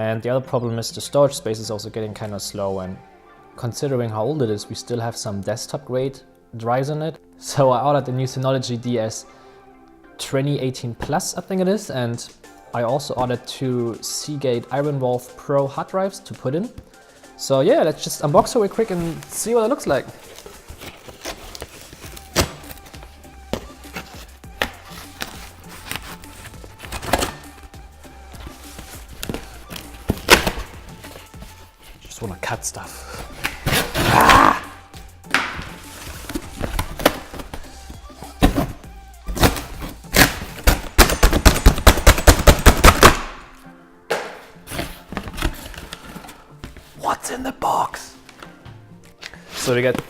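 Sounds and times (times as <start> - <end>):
background music with bass line: 11.9 - 50.0
cardboard box being handled: 18.3 - 27.6, 28.4 - 32.3, 35.3 - 41.0, 44.6 - 47.0.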